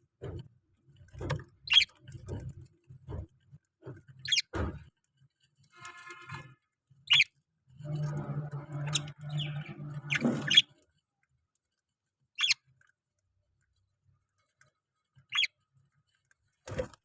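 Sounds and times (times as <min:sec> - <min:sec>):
parrot squeaky chirps: 0:01.7 - 0:01.9, 0:04.2 - 0:04.5, 0:07.1 - 0:07.3, 0:08.8 - 0:10.7, 0:12.4 - 0:12.6, 0:15.3 - 0:15.5
parrot scratchy chattering: 0:08.9 - 0:10.7, 0:12.4 - 0:12.6.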